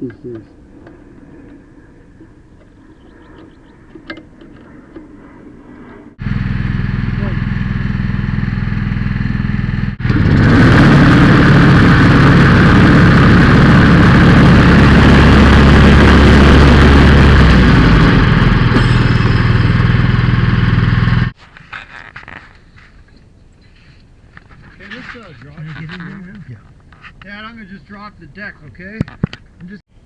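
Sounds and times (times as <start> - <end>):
riding lawn mower engine running: 6.2 - 21.4.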